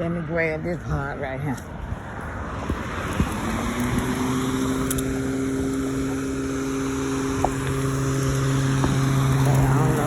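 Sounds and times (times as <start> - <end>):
electric lawnmower humming: 2.5 - 10.0.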